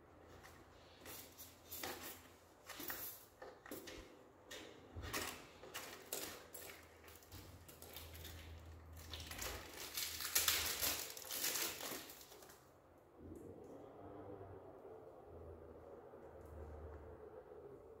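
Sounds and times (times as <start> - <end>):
rustling crinkling handling: 5.0 - 12.7.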